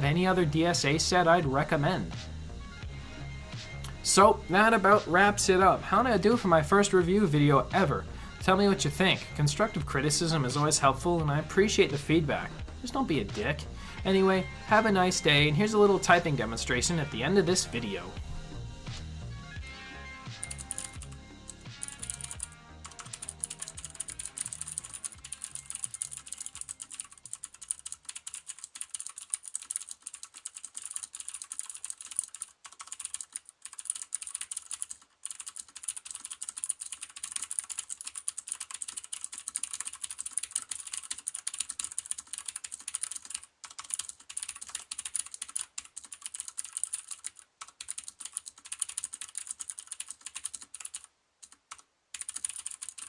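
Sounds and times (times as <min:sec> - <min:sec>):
fast typing on mechanical keyboard: 0:20.4 - 0:53.0.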